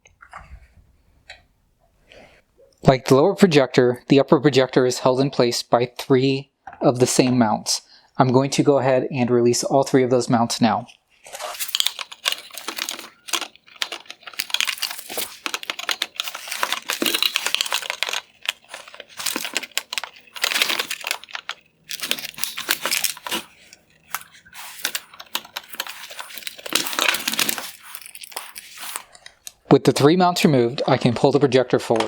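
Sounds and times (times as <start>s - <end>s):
plastic clicks creaks and scraping: 11.2s - 29.6s.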